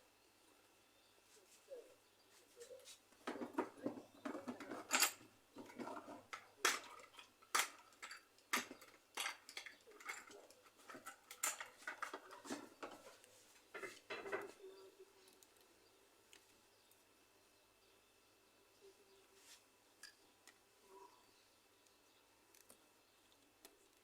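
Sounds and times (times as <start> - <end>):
metal hand tools clinking: 4.6 - 13.0.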